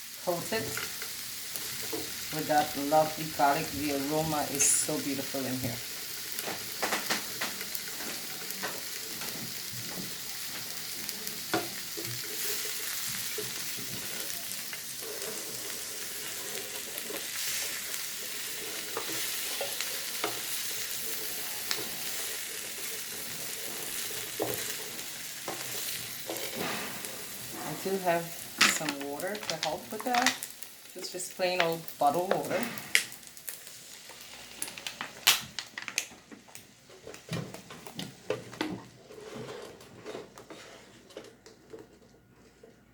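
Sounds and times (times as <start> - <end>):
vegetables sizzling in a pan: 0.0 - 38.6
utensil scraping a pan: 11.5 - 29.0, 38.9 - 41.2.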